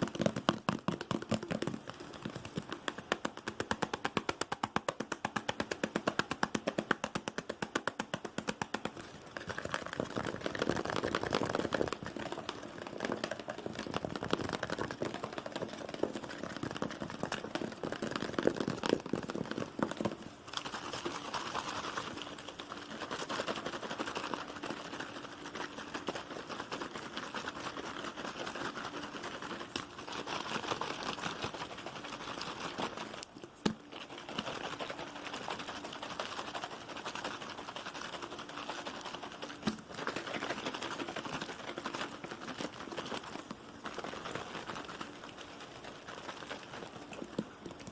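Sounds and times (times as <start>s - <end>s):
fast tapping on objects: 0.0s - 47.9s.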